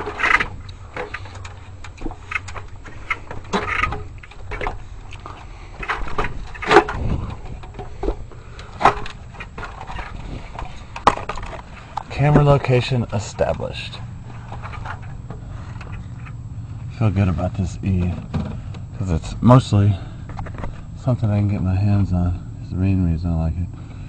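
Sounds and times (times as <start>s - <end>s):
knocks and rustles on ladder: 0.0s - 13.7s, 17.5s - 18.8s.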